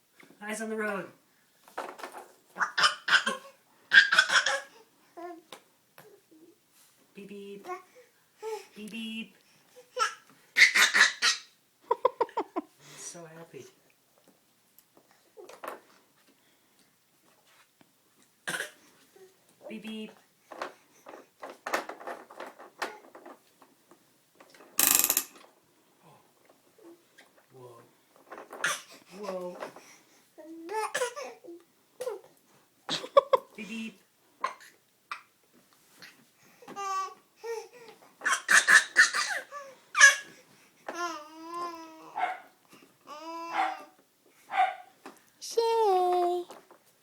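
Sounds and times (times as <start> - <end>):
baby walker plastic clattering: 1.7 - 2.4, 20.5 - 23.8, 28.2 - 29.8
baby laughing and squealing: 2.6 - 4.7, 10.0 - 11.6, 38.2 - 40.3.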